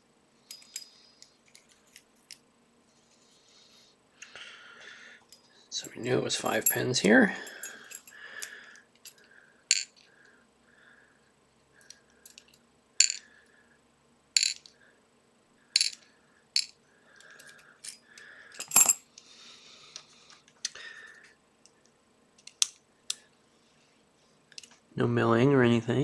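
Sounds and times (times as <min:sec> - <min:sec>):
soft scraping of parts: 0:00.4 - 0:03.9
metal lock pins clinking: 0:00.5 - 0:02.4, 0:05.3 - 0:09.9, 0:12.3 - 0:13.2, 0:18.6 - 0:19.0.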